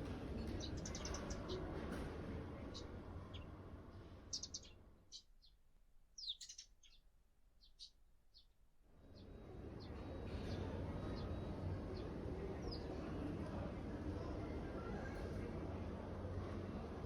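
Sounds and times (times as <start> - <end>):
small birds chirping: 0.0 - 1.8, 2.6 - 13.1
faint steady background noise: 0.0 - 17.0.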